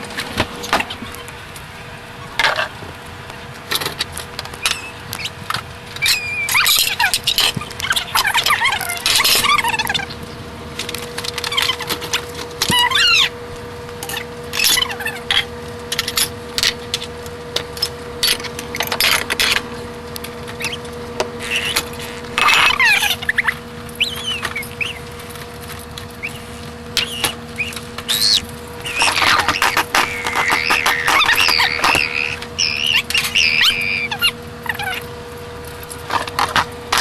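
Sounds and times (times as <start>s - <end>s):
steady hum: 0.0s - 37.0s
high squeaky chirps: 4.6s - 5.4s, 6.0s - 10.3s, 12.6s - 13.4s, 20.6s - 25.2s, 26.2s - 35.1s.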